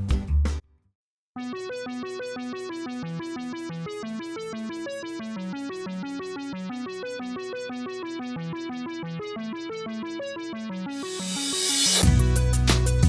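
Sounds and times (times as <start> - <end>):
bright synthesizer melody: 10.9 - 12.0.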